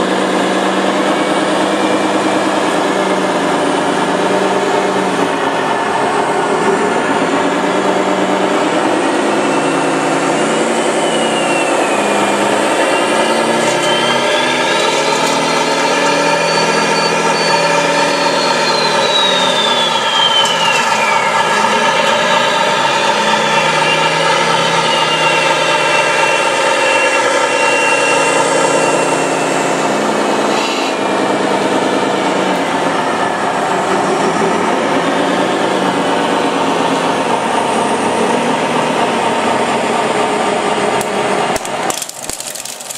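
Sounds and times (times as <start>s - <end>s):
engine-like drone: 0.0s - 42.9s
motor whines: 9.0s - 31.3s.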